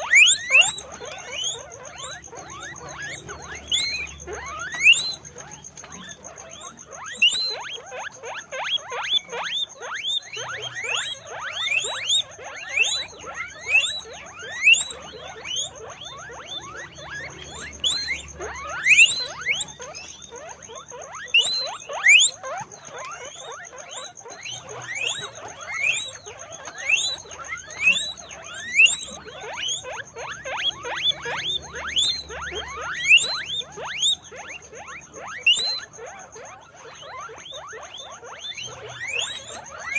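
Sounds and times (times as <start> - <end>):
guinea pigs squeaking: 0.0 - 39.9.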